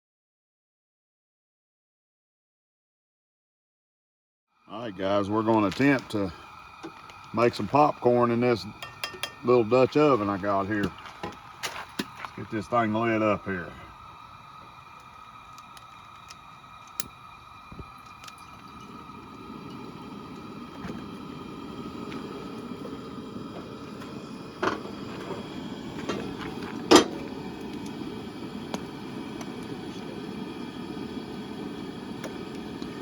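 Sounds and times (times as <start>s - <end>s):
gas flame rushing: 4.8s - 33.0s
metal pot clanks: 8.8s - 9.4s, 26.9s - 27.2s
burner igniter clicks: 15.0s - 17.3s, 24.0s - 29.9s, 30.5s - 33.0s.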